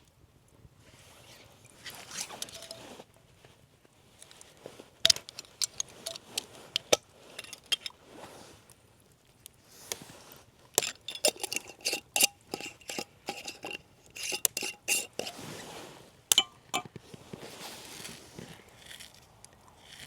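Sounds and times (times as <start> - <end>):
utensils clinking on cookware: 2.2 - 2.9, 10.8 - 15.4.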